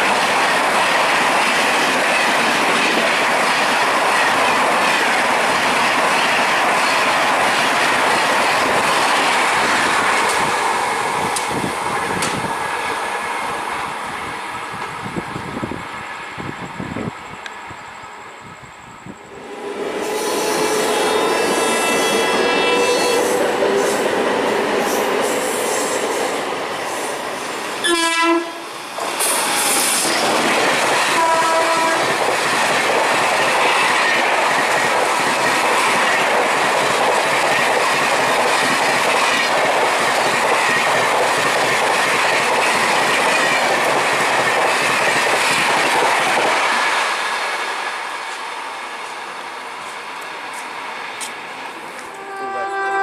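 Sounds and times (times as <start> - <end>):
train wheels clattering on track: 0.0 - 13.8, 21.8 - 52.2
train horn: 19.3 - 24.0, 27.8 - 28.7, 31.1 - 32.2, 52.0 - 53.0.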